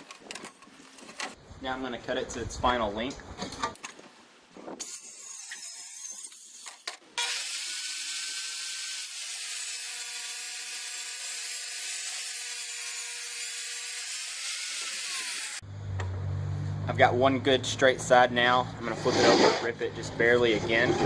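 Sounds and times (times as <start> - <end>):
power saw cutting plywood: 3.8 - 15.6.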